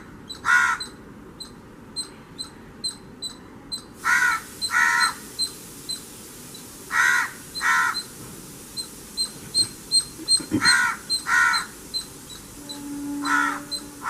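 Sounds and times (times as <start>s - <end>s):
crow cawing: 0.4s - 0.9s, 4.0s - 5.2s, 6.9s - 8.0s, 10.4s - 11.8s, 12.7s - 14.0s
rapid high-pitched ticks: 4.6s - 14.0s.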